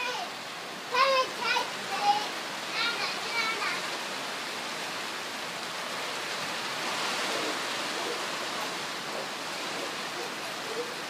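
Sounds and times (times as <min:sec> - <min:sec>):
heavy rain falling: 0:00.0 - 0:11.0.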